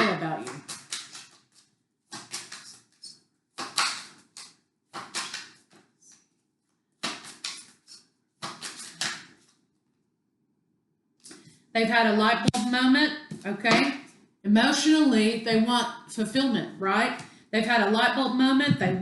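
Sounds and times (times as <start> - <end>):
cards shuffling: 0.0 - 9.7.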